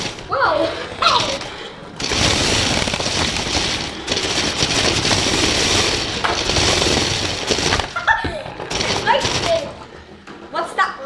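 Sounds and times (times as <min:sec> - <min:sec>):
rattle of plastic parts and gears: 0:00.0 - 0:10.8.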